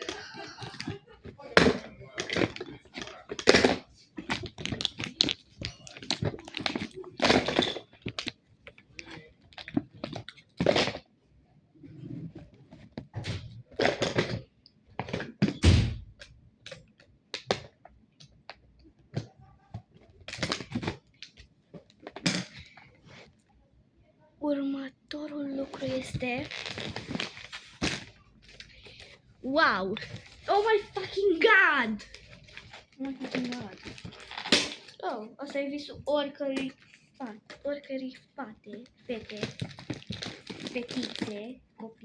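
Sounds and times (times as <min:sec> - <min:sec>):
objects being handled: 0:00.0 - 0:11.1, 0:11.8 - 0:23.5, 0:25.1 - 0:42.0
heavy thump: 0:15.6 - 0:16.1.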